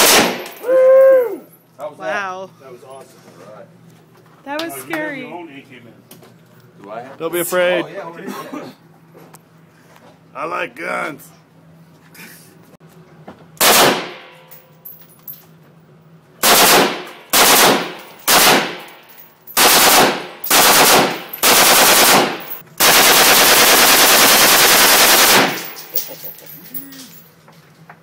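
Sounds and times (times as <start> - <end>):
gunshot echo: 0.0 - 0.5, 13.6 - 14.4
automatic rifle fire: 0.0 - 0.6, 13.6 - 14.4, 16.4 - 18.9, 19.6 - 25.9.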